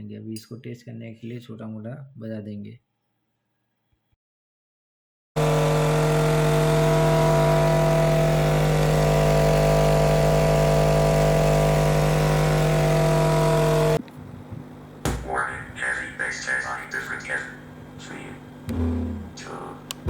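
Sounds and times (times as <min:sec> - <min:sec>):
subwoofer low buzzing tone: 0:18.6 - 0:19.4.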